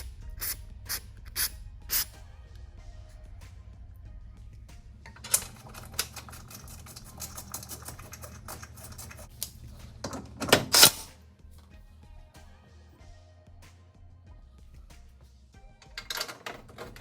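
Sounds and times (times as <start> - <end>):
hand tools clicking and clattering: 5.0 - 11.1, 15.8 - 17.0.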